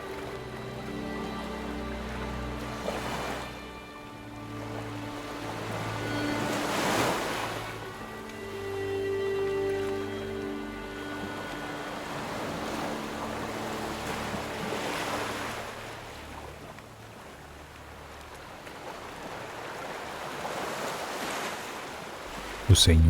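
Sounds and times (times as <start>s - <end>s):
ocean waves washing in: 9.8s - 23.0s.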